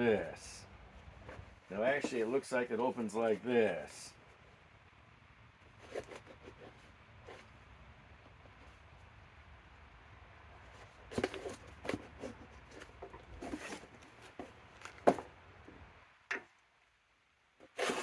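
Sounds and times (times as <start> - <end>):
cardboard packaging rustling: 11.1 - 15.3.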